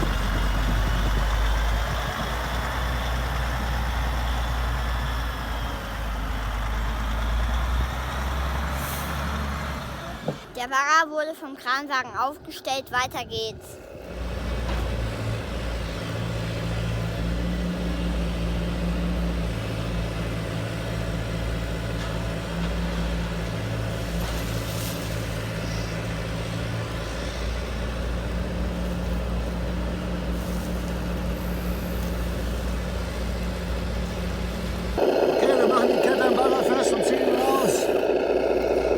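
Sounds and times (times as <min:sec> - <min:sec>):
engine-like drone with hum: 0:00.0 - 0:06.5, 0:17.2 - 0:38.9.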